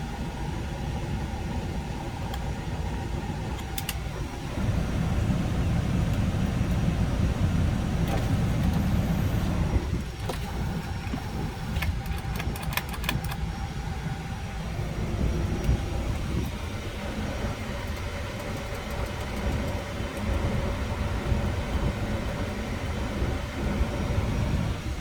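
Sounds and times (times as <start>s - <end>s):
diesel engine idling: 0.0s - 25.0s.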